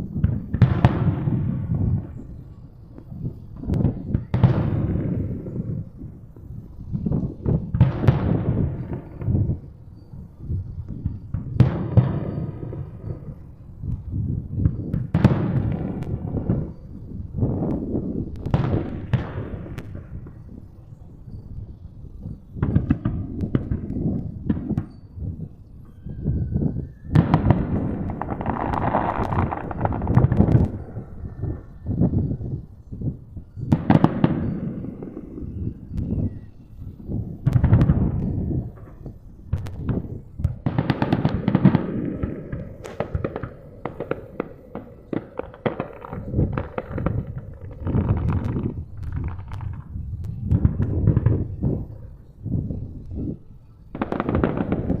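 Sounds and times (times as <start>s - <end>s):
firework whistle: 0.0s - 55.0s
fireworks booming and crackling: 0.0s - 55.0s.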